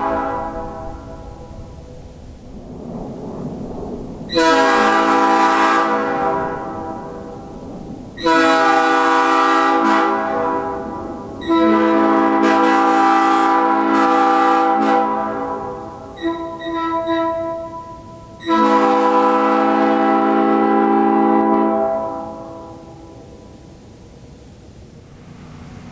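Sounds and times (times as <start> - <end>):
air horn blasts: 0.0 - 1.9, 4.3 - 7.6, 8.2 - 23.3.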